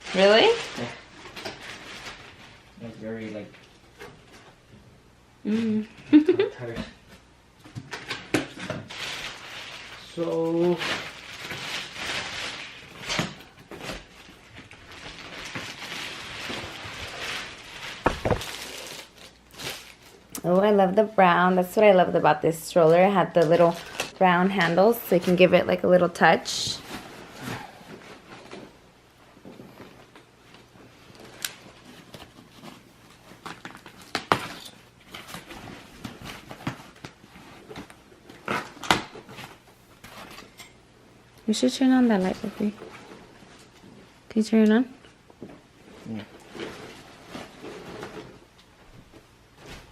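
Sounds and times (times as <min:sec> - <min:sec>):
plastic and packaging rustling: 0:00.0 - 0:04.6, 0:07.8 - 0:20.8, 0:22.7 - 0:40.7, 0:41.6 - 0:44.2, 0:45.4 - 0:49.9
sharp knocks: 0:18.0 - 0:18.4.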